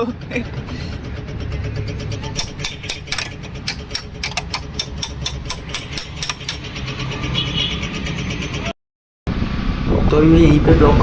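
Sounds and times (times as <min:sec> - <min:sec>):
engine idling: 0:00.0 - 0:08.7
rapid engine ticking: 0:00.0 - 0:08.7.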